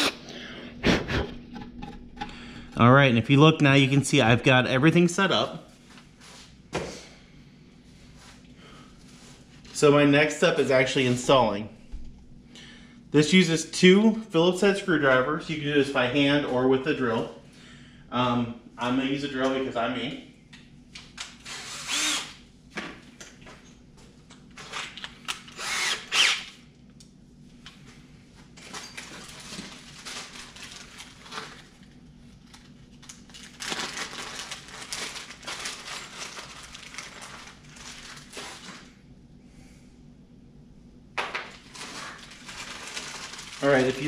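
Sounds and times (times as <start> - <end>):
power drill whining: 21.4 - 22.4, 25.5 - 26.5.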